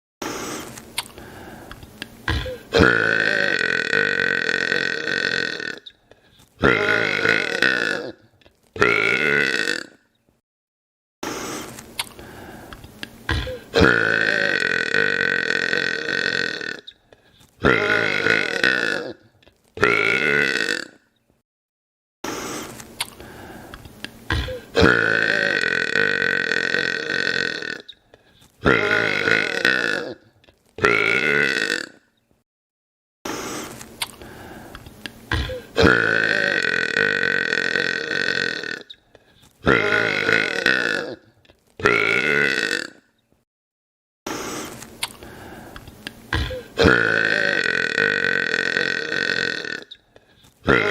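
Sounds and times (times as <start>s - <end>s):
man burping: 2.3s - 5.9s, 6.6s - 10.0s, 13.3s - 16.9s, 17.6s - 21.0s, 24.3s - 27.9s, 28.6s - 32.1s, 35.3s - 38.9s, 39.6s - 43.1s, 46.3s - 50.0s, 50.6s - 50.9s.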